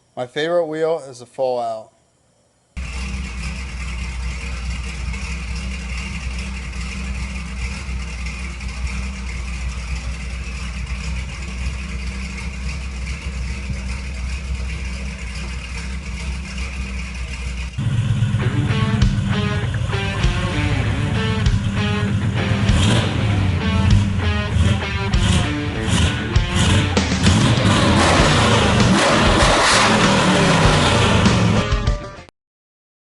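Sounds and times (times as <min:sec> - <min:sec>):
pickup engine idling: 0:02.8 - 0:31.8
guitar music: 0:15.9 - 0:32.3.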